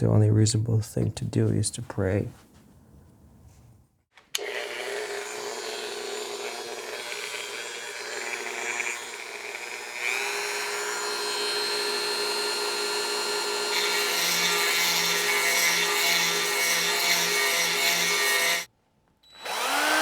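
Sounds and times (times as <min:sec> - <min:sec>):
small power tool running: 0:04.4 - 0:18.7, 0:19.3 - 0:20.0.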